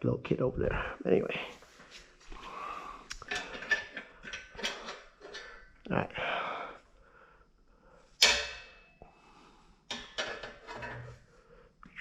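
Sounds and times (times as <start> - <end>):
metal parts clattering and clicking: 3.3 - 5.6
sharp metallic clank: 8.2 - 9.0.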